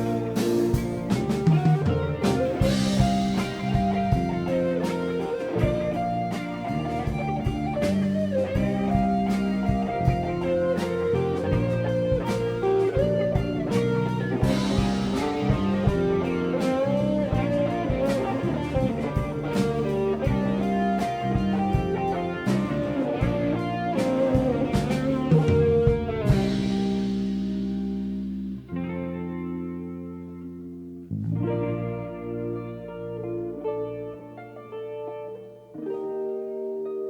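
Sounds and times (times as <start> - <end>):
drum kit: 0.0 - 29.3
bass guitar: 0.0 - 37.0
electric guitar melody: 0.0 - 37.0.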